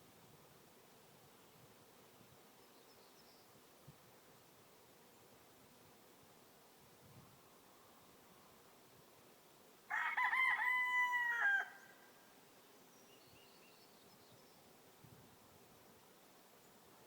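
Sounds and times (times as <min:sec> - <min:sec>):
rooster crowing: 0:09.9 - 0:12.2.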